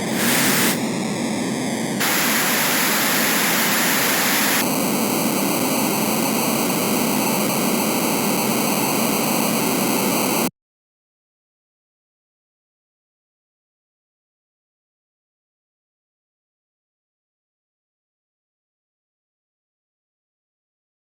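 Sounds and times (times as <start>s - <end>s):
loud static-like electronic noise: 0.0s - 10.5s.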